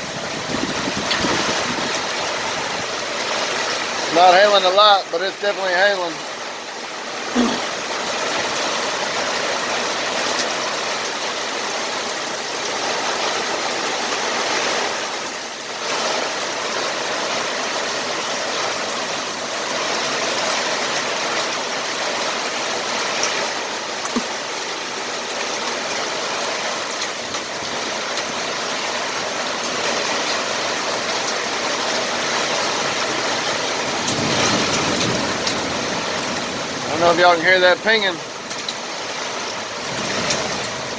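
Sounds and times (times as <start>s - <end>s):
rain hissing: 0.0s - 40.9s
hailstones pinging on hard surfaces: 17.9s - 40.9s.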